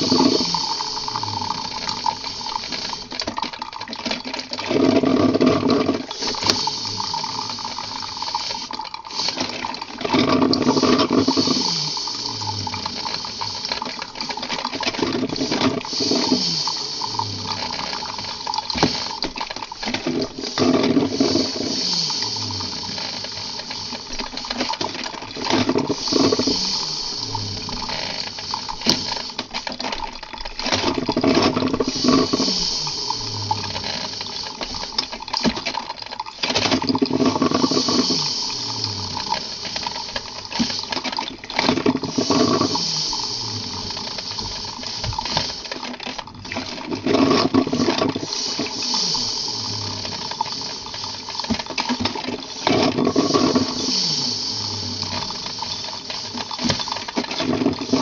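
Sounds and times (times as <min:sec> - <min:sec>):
steady hum: 0:00.0 - 0:03.3, 0:05.5 - 0:58.0
coffee machine running: 0:00.0 - 0:58.0
watery hiss: 0:00.0 - 0:58.0.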